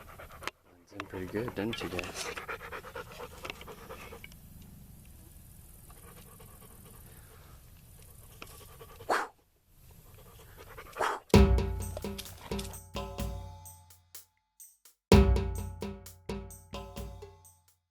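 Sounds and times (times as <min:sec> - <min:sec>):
dog panting: 0:00.0 - 0:04.3, 0:05.9 - 0:07.4, 0:08.1 - 0:09.3
music with drums: 0:11.4 - 0:17.8.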